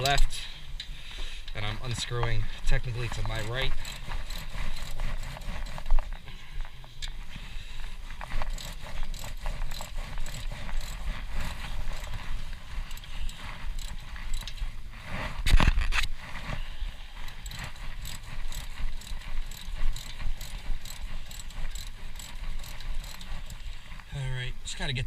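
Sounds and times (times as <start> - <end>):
ratchet wrench clicking: 0.0 - 0.3, 1.5 - 6.1, 8.2 - 14.6, 17.2 - 23.7.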